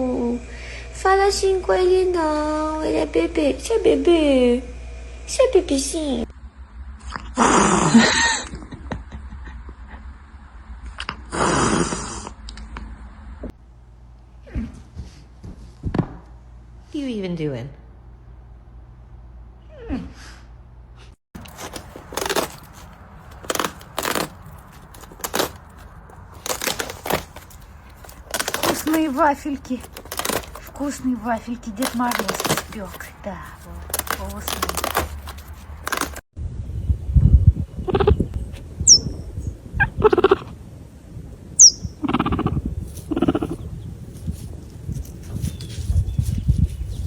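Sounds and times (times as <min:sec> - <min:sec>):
pet crunching wafer biscuits: 0:21.4 - 0:36.2
animal calling: 0:38.9 - 0:39.2, 0:41.6 - 0:43.7.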